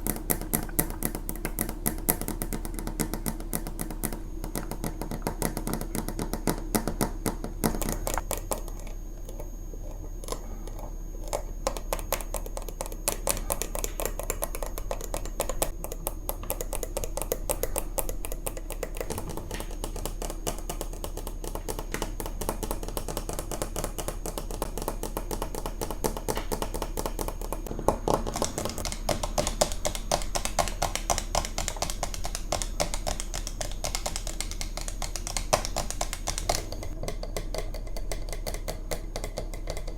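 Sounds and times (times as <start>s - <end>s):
tapping on fridge magnets: 11.2s - 39.9s.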